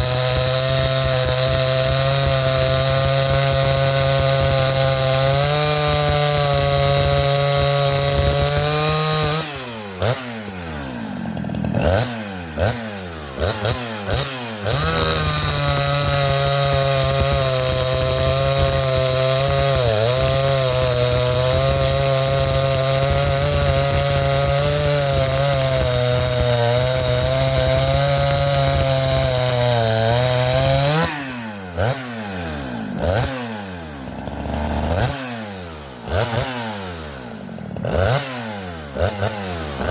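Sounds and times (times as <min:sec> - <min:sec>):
chainsaw cutting wood: 0:00.0 - 0:39.9
chainsaw revving: 0:00.0 - 0:39.9.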